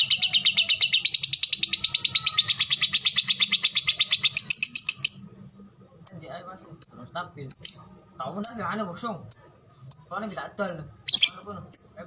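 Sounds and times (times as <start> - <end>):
lovebird trilling chirps: 11.1 - 12.0.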